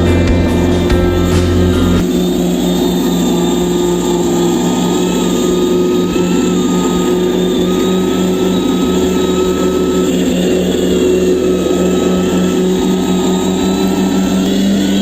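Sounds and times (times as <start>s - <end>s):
simulated truck engine idling: 0.0s - 15.0s.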